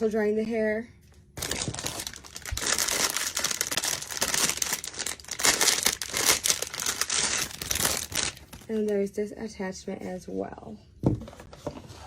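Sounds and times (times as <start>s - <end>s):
plastic packaging crinkling: 1.4s - 8.9s.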